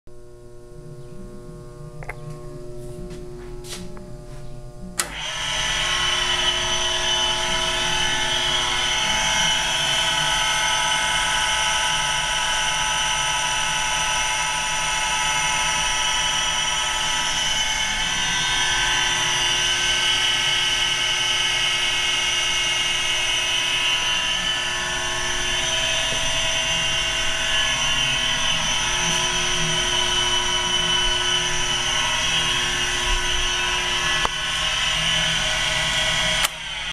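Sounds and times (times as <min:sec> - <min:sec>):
quiet hum: 0:00.1 - 0:05.1
tool grinder whining: 0:05.0 - 0:36.9.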